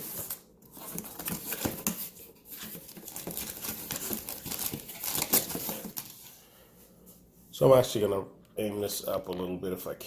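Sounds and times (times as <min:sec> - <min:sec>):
cardboard tearing: 0:00.0 - 0:06.2
packaging crinkling: 0:00.0 - 0:06.3.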